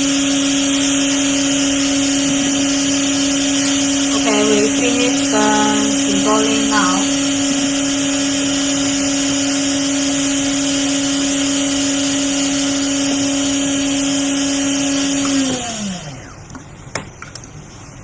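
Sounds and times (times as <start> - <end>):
hot air gun blowing: 0.0 - 11.1
blower motor hum: 0.0 - 18.0.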